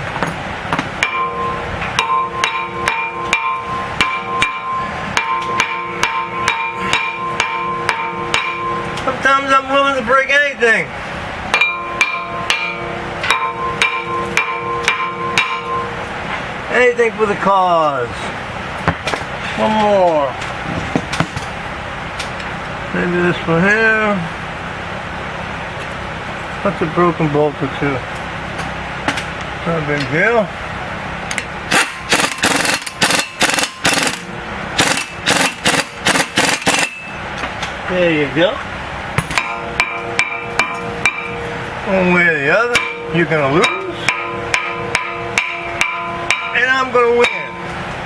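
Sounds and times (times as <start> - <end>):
hammer striking steel: 0.2 - 9.2, 11.5 - 16.1, 31.4 - 37.2, 39.2 - 41.7, 42.6 - 47.8.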